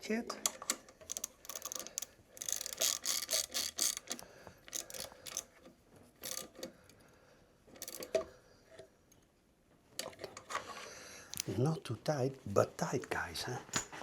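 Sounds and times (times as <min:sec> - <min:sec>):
ratchet wrench clicking: 0:01.0 - 0:05.5, 0:06.2 - 0:06.7, 0:07.8 - 0:08.1.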